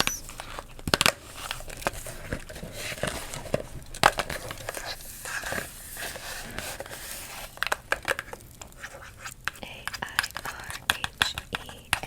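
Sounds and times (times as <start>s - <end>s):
candy wrappers crinkling: 0.0s - 12.0s
taps and clicks on candy canister: 9.5s - 12.0s.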